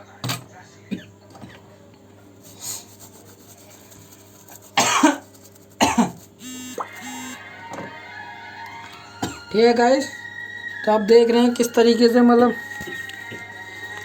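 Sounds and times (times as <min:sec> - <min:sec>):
person coughing: 0:04.8 - 0:06.2.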